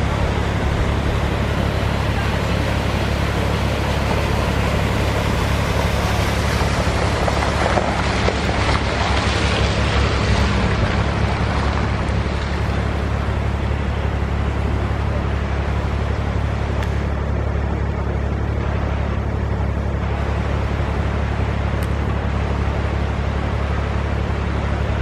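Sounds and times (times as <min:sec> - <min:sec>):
stream water rushing: 0:00.0 - 0:25.0.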